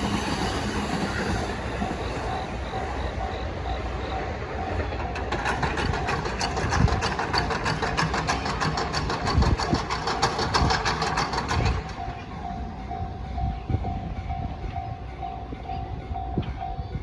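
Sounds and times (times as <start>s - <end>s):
train wheels clacking over rail joints: 0.0s - 12.9s
crossing warning bell dinging: 0.0s - 17.0s.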